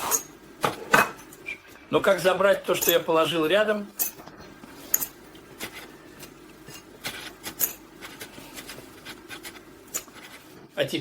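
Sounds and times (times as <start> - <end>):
kitchenware clicks and taps: 0.0 - 1.5
faint background hum: 0.0 - 11.0.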